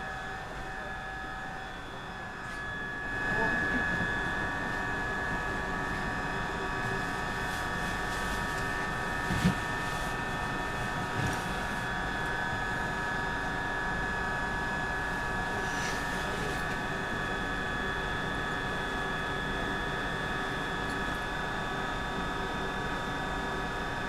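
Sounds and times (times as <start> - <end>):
subway train electrical hum and whine: 0.0 - 24.0.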